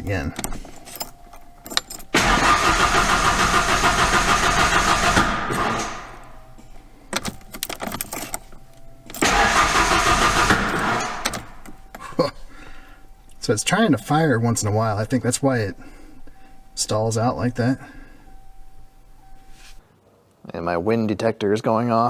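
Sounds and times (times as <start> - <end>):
engine starter cranking: 0.4 - 19.4
engine trying to fire: 1.9 - 6.4, 7.2 - 13.2.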